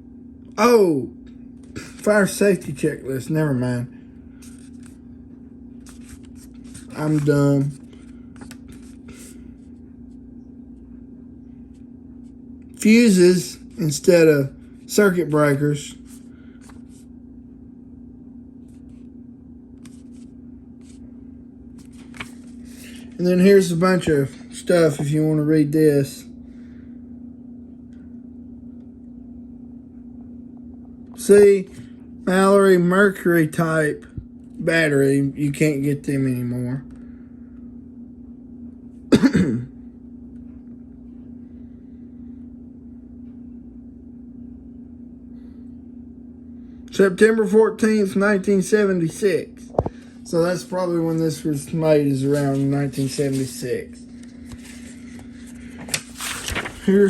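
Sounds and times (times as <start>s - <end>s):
steady low hum: 0.0s - 57.0s
paper pages rustling: 4.3s - 5.1s, 5.7s - 10.2s, 16.0s - 17.1s, 19.8s - 21.0s, 21.8s - 23.2s, 51.6s - 57.0s
man clearing his throat: 39.1s - 39.8s.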